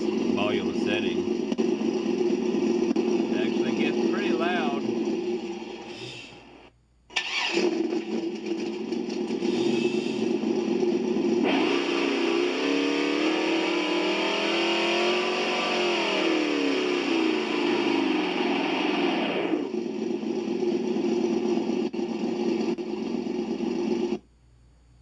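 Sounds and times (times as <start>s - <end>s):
simulated engine revving from speaker: 0.0s - 6.1s, 9.3s - 19.8s.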